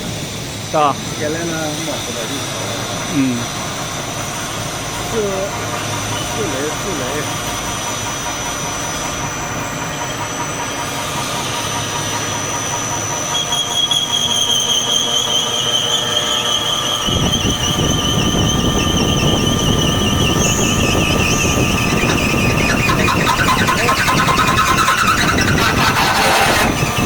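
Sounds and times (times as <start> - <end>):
drilling machine running: 0.0 - 27.0
high wavering squeal: 0.0 - 27.0
rough low grinding noise: 10.4 - 27.0.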